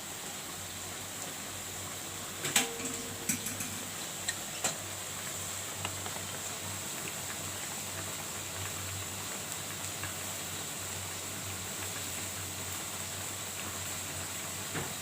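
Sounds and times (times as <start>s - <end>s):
utensils clinking against cookware: 2.4s - 4.8s.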